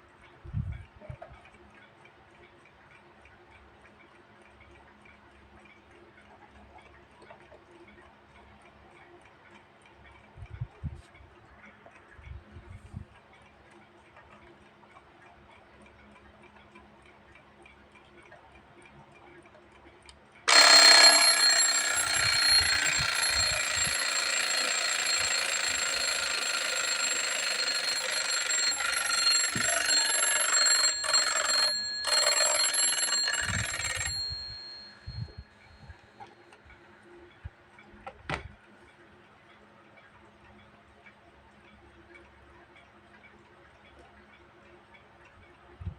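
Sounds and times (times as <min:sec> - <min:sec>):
alarm clock ticking: 0:20.5 - 0:36.0
alarm bell ringing: 0:20.5 - 0:36.3.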